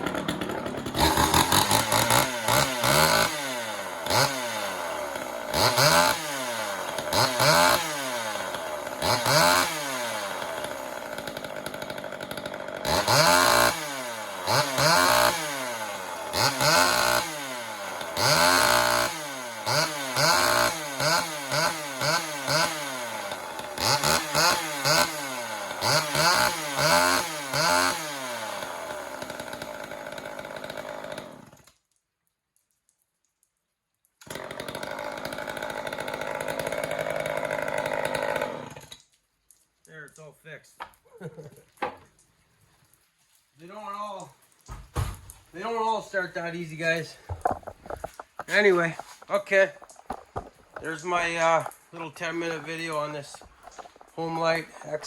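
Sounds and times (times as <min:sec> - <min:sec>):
chainsaw engine revving: 0:00.0 - 0:31.7, 0:34.2 - 0:39.0, 0:45.0 - 0:55.0.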